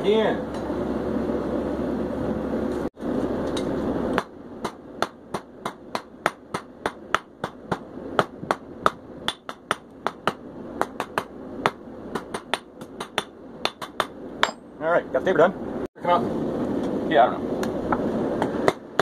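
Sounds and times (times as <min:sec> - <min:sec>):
steady rushing noise: 0:00.0 - 0:19.0
hammer striking steel on anvil: 0:03.5 - 0:14.7.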